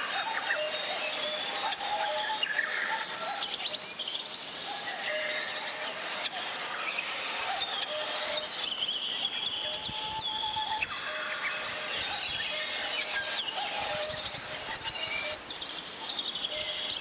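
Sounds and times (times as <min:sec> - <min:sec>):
birds chirping and whistling: 0:04.4 - 0:15.4.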